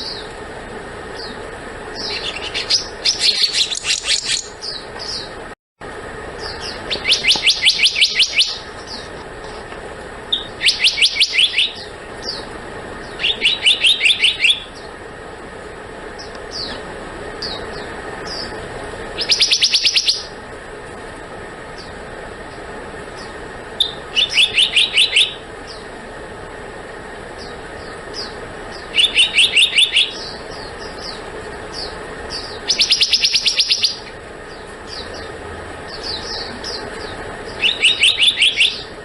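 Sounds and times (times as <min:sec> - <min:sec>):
bird calling high notes: 0:06.4 - 0:09.2, 0:10.3 - 0:14.9, 0:19.2 - 0:20.4, 0:23.2 - 0:25.9, 0:27.4 - 0:39.0.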